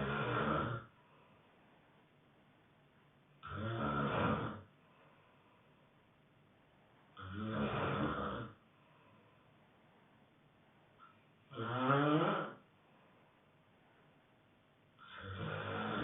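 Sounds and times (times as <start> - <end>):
person snoring: 0.0 - 1.0, 3.4 - 4.7, 7.2 - 8.6, 11.5 - 12.7, 15.0 - 16.0.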